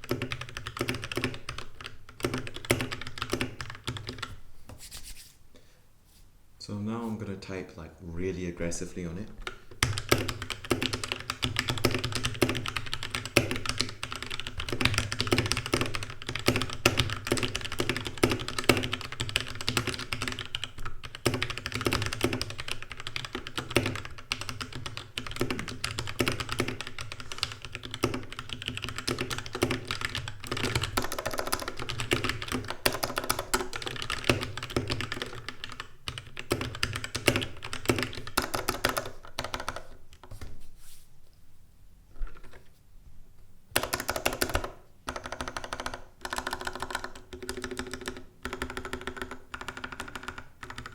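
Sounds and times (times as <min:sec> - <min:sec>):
mechanical keyboard typing: 0:00.0 - 0:04.3, 0:09.4 - 0:40.0, 0:43.8 - 0:50.9.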